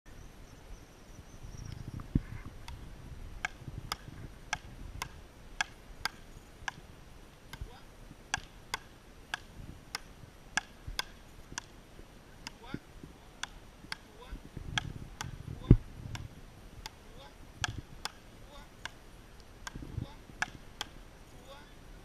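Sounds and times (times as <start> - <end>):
paddles striking rubber ball: 3.4 - 6.9, 7.5 - 11.7, 17.6 - 21.0.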